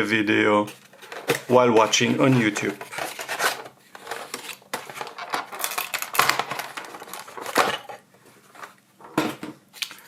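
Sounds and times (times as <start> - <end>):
objects clicking and rustling on surface: 0.7 - 9.9.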